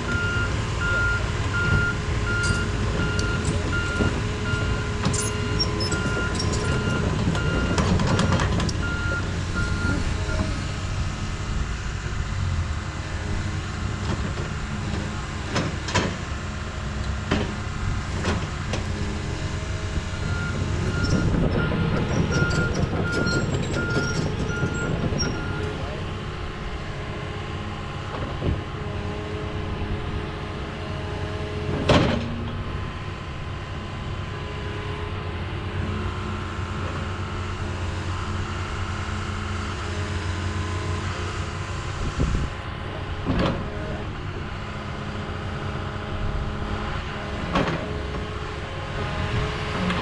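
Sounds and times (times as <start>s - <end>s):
diesel engine running: 0.0s - 50.0s
reversing alarm beeping: 0.1s - 10.6s, 20.2s - 25.8s.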